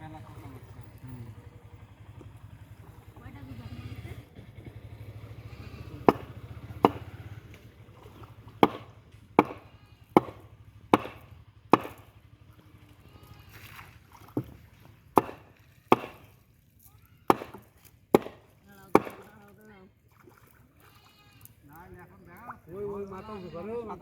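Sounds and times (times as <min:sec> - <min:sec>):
blade chopping wood: 0:05.6 - 0:12.2, 0:14.4 - 0:16.4, 0:17.3 - 0:19.3.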